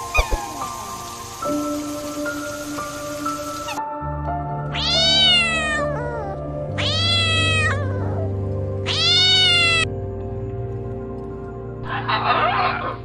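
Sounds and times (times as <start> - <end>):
cat meowing: 0.1 - 1.0, 4.7 - 9.9.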